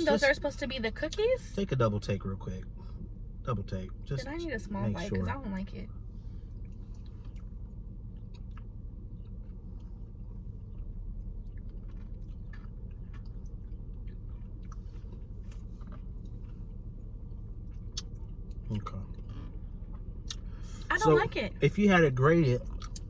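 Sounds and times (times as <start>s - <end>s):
steady low hum: 0.0s - 23.0s
person chewing ice cream: 6.5s - 20.5s, 22.6s - 23.0s.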